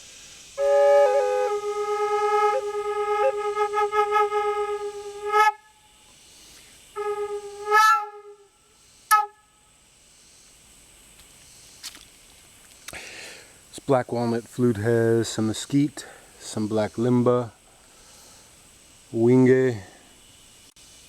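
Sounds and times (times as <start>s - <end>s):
drone flute notes: 0.6s - 5.7s, 7.0s - 8.5s, 9.1s - 9.4s.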